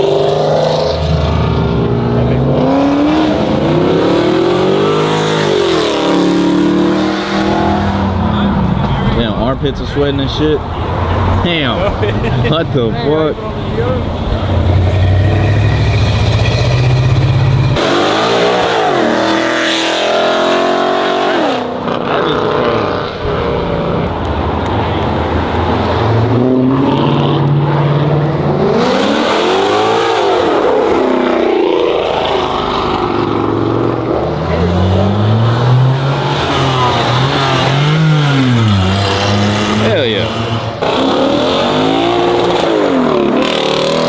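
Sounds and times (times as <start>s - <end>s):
car engines revving: 0.0s - 44.0s.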